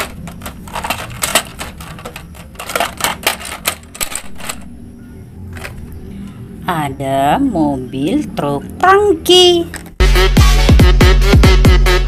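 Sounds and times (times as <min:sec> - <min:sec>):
plastic toys clattering: 0:00.0 - 0:04.8, 0:05.5 - 0:05.9.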